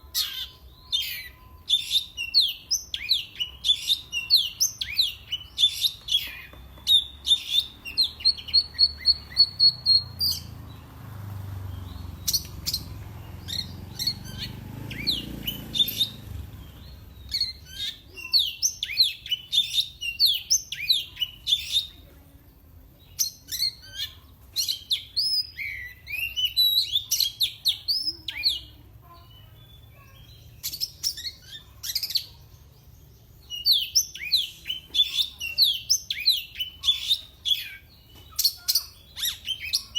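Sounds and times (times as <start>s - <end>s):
bird singing chirps and whistles: 0.0s - 10.8s, 11.7s - 22.0s, 23.1s - 39.9s.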